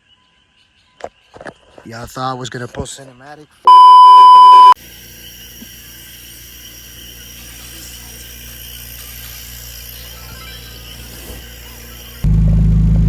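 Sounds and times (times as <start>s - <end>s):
censor bleep tone: 3.7s - 4.8s
mechanical hum with hiss: 4.8s - 12.3s.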